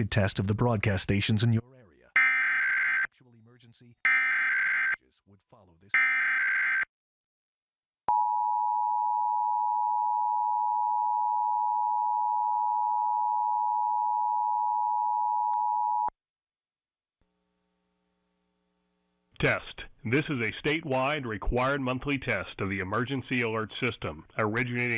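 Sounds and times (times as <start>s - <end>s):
two-tone emergency alert signal: 2.2s - 3.1s, 4.1s - 5.0s, 6.0s - 6.9s.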